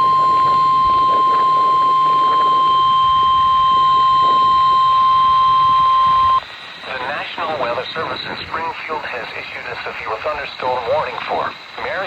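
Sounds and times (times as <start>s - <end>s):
steady warning alarm tone: 0.0s - 6.4s.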